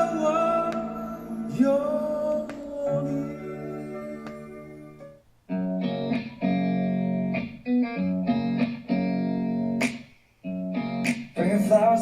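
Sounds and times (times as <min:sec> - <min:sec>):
guitar chords through speakers: 0:00.0 - 0:12.0.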